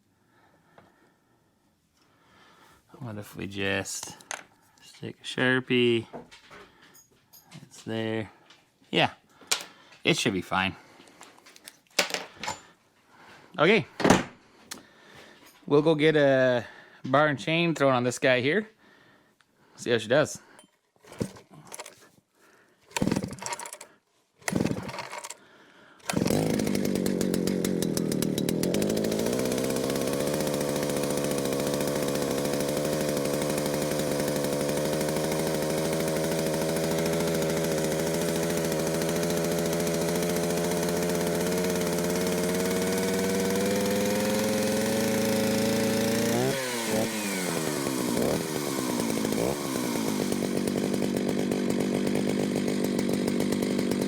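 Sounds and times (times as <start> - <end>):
chainsaw revving: 20.4 - 22.0, 22.8 - 54.0
chainsaw engine idling: 20.4 - 54.0.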